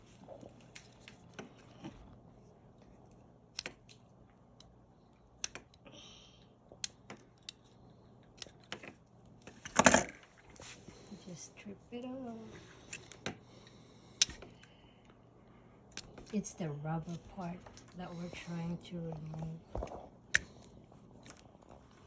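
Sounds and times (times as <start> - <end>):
pliers clicking and snipping wire: 3.5 - 5.8, 6.7 - 9.1, 14.2 - 14.7, 15.9 - 17.9.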